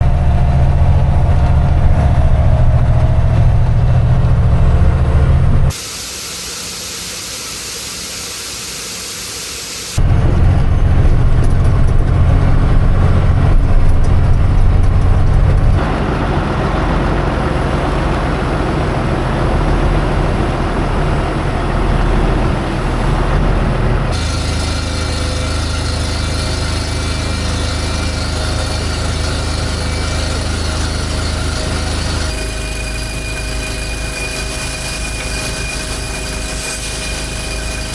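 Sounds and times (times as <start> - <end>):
heavy vehicle engines running: 0.0 - 5.8, 10.0 - 37.9
loud steady hissing: 5.7 - 10.0, 24.1 - 37.9.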